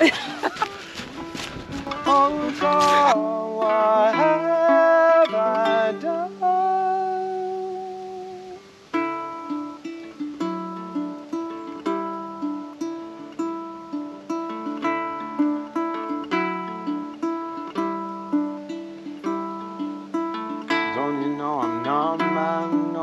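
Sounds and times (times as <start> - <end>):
plucked-string instrumental: 0.0 - 23.0
held sung note: 1.7 - 8.7.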